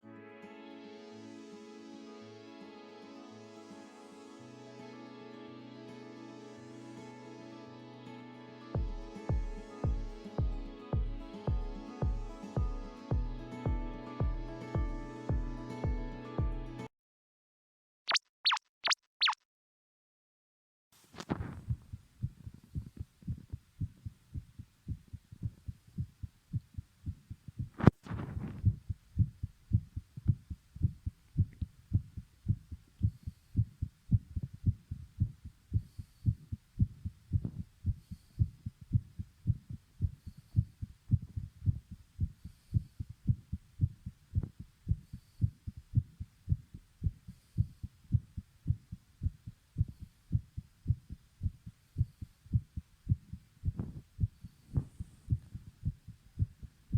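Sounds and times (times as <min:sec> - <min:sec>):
heartbeat pounding: 0:08.8 - 0:16.6, 0:21.4 - 0:56.9.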